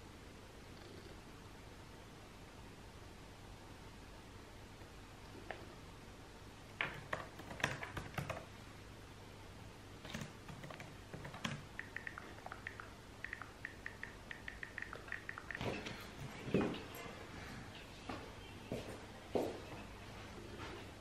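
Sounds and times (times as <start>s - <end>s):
typing on computer keyboard: 6.8s - 8.5s, 10.0s - 16.0s.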